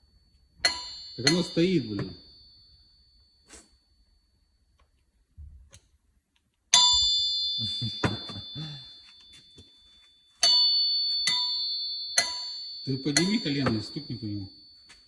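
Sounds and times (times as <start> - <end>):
high metallic ring: 0.0 - 4.7, 6.7 - 15.0
metal tool striking crankshaft: 0.6 - 2.1, 10.4 - 11.6, 12.2 - 12.6.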